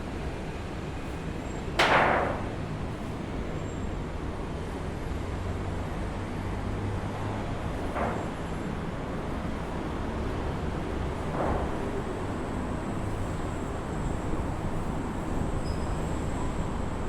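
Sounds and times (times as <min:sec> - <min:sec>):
aluminium sheet flapping: 0:01.7 - 0:03.5, 0:07.7 - 0:15.4.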